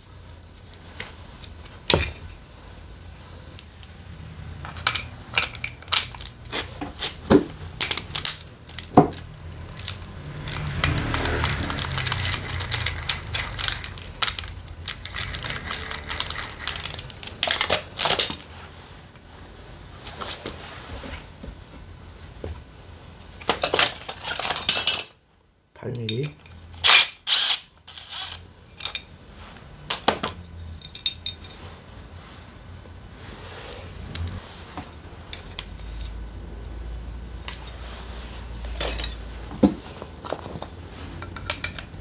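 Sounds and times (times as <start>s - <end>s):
metal tools clinking: 4.6s - 18.5s, 23.5s - 25.2s, 26.0s - 29.1s, 29.9s - 31.6s, 38.6s - 39.4s, 40.2s - 42.0s.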